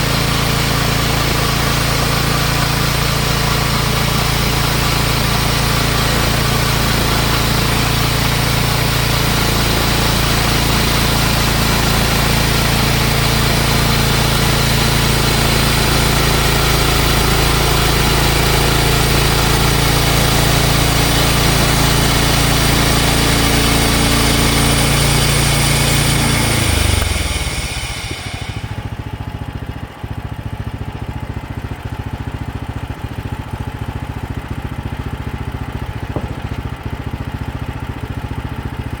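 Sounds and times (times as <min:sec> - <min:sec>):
sawmill gas engine running: 0:00.0 - 0:39.0
loud hiss: 0:23.2 - 0:29.1.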